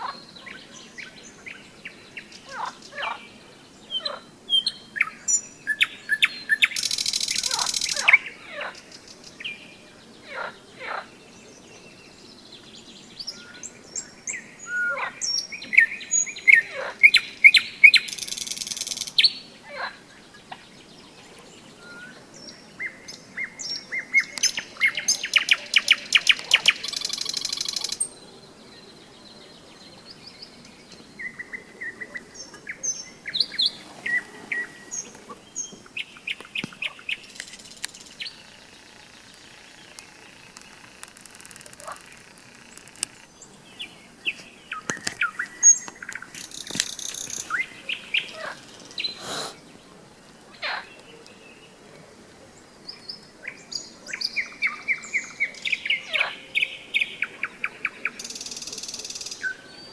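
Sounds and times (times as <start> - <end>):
nightingale singing: 0.0 - 51.8, 52.5 - 59.9
nightingale rattling trills: 3.9 - 9.5, 13.3 - 19.9, 22.8 - 28.3, 31.0 - 49.2.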